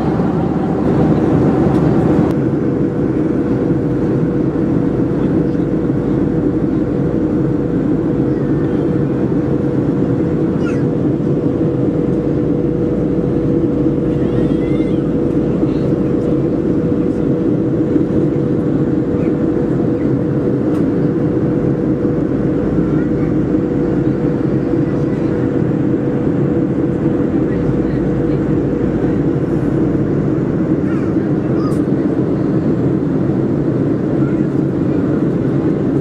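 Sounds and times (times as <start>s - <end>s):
airflow rushing: 0.0s - 5.2s
jet engines droning: 0.0s - 36.0s
steady cabin hum: 0.0s - 36.0s.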